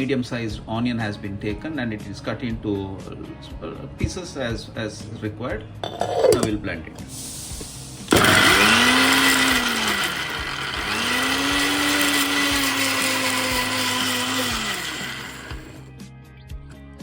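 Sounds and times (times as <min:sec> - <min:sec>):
electric blender grinding: 0:05.8 - 0:06.5, 0:07.4 - 0:15.9.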